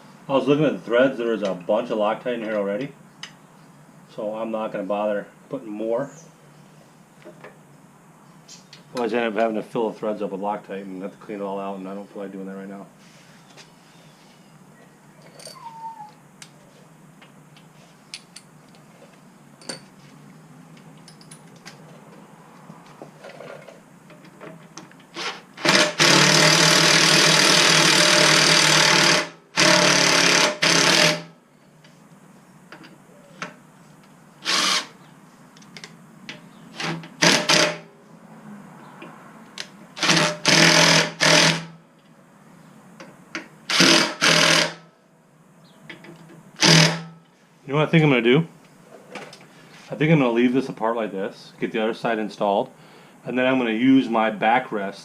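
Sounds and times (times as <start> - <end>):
power driver running: 25.2 - 31.3, 34.4 - 35.0, 43.7 - 44.8.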